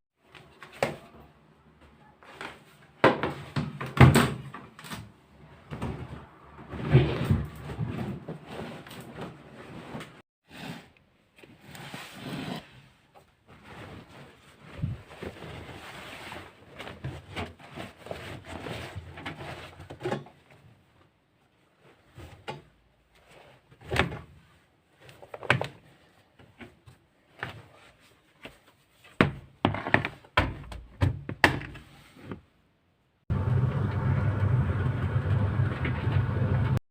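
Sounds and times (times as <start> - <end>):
rustling and rubbing: 6.7 - 10.8, 11.4 - 19.9.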